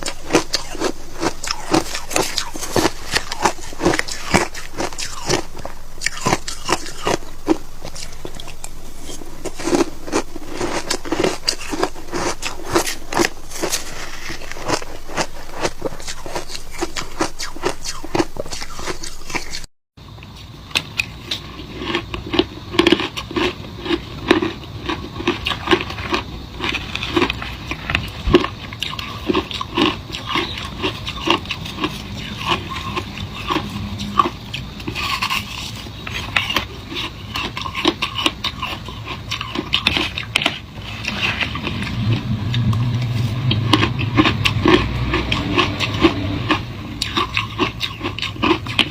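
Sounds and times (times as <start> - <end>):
shaved ice crunching: 0.0 - 19.7.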